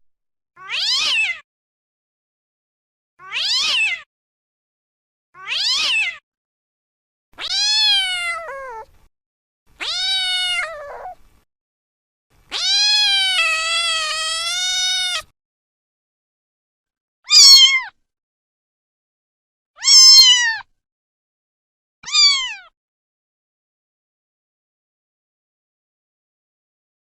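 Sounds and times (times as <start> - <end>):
cat meowing: 0.6 - 1.4, 3.2 - 4.1, 5.4 - 6.2, 7.4 - 8.9, 9.8 - 11.2, 12.5 - 15.3, 17.3 - 18.0, 19.8 - 20.7, 22.0 - 22.7.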